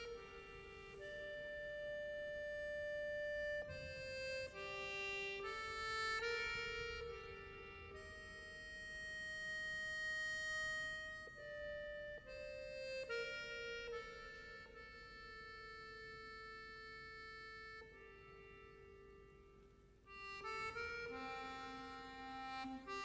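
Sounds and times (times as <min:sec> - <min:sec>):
reed instrument melody: 0:00.0 - 0:23.0.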